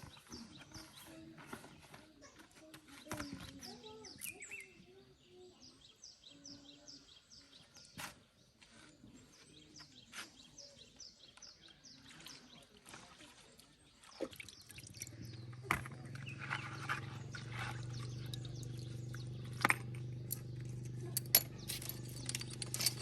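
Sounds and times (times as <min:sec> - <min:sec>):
low steady hum: 0:14.6 - 0:23.0.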